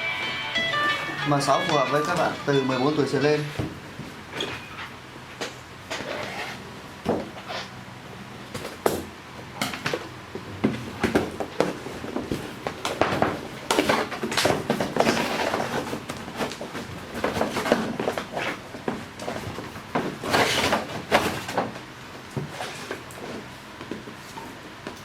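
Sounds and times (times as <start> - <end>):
objects being moved about: 9.6 - 23.5.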